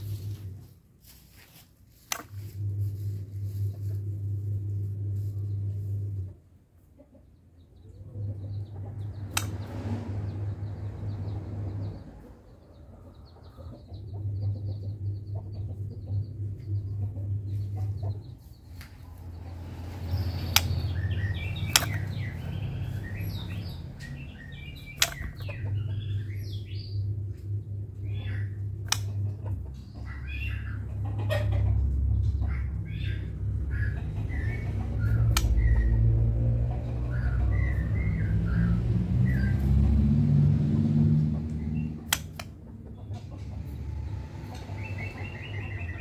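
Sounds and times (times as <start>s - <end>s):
low hum: 0.0s - 6.8s, 7.6s - 46.0s
sharp clicks: 9.2s - 9.7s, 20.4s - 20.9s, 21.5s - 22.5s, 24.8s - 25.6s, 28.8s - 29.3s, 35.2s - 35.8s, 41.5s - 42.6s.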